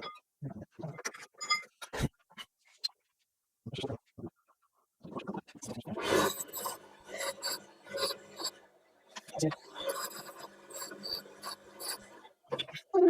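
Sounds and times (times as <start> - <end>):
hand tool rasping on metal: 6.1 - 8.6, 9.6 - 12.3.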